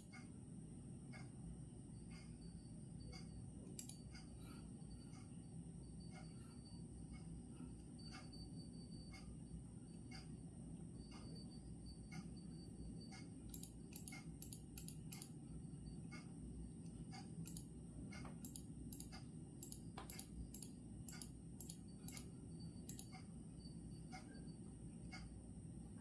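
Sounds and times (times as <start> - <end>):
faint high whine: 0.0 - 26.0
low background noise: 0.0 - 26.0
soft irregular clicking: 1.1 - 1.4, 3.0 - 5.4, 6.0 - 10.4, 11.0 - 15.5, 16.1 - 23.4, 24.0 - 25.4.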